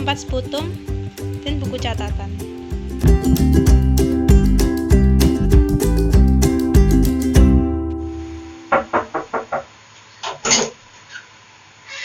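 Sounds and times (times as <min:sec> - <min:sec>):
strummed guitar chords: 0:00.0 - 0:09.0.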